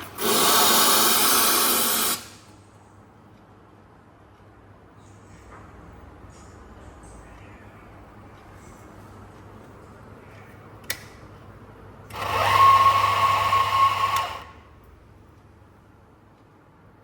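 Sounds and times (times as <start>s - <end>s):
coffee machine buzzing: 0.0s - 2.4s, 12.1s - 14.6s.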